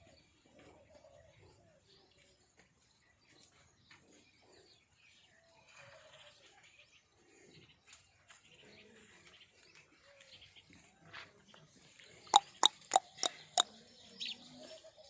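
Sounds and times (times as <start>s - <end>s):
birds chirping: 11.8s - 15.0s.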